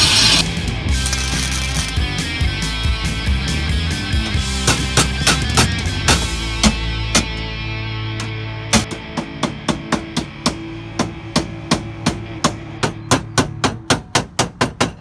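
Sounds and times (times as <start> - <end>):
background music: 0.0 - 14.8
hammer striking sheet steel: 4.5 - 7.5.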